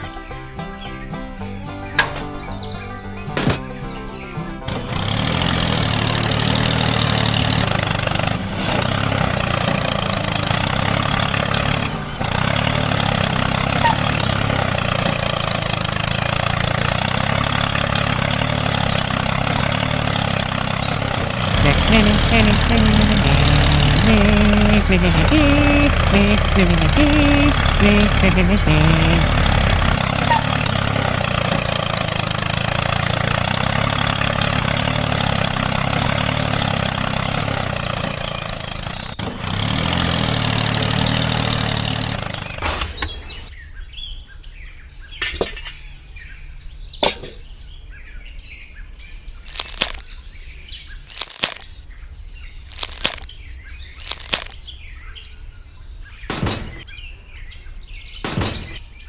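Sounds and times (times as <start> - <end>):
motor running: 0.0 - 43.3
birds chirping faintly: 0.0 - 59.0.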